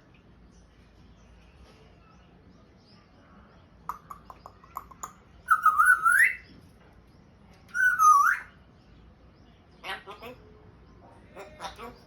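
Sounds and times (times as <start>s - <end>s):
parrot clicking chirps: 3.9s - 6.2s
parrot whistle sweeping upward: 5.5s - 6.4s, 7.8s - 8.5s.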